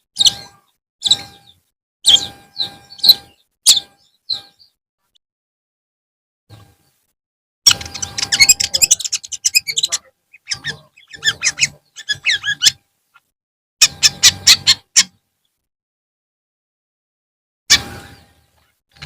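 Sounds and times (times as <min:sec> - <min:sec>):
shrike harsh chattering calls: 0:00.2 - 0:04.7, 0:07.7 - 0:12.8, 0:13.8 - 0:15.1.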